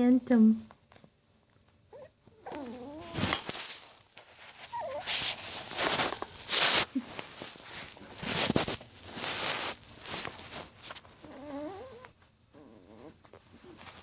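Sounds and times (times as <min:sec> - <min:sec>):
puppy whine: 0:01.9 - 0:03.6, 0:04.5 - 0:06.5, 0:11.2 - 0:14.0
puppies scrambling on plastic: 0:02.5 - 0:12.1.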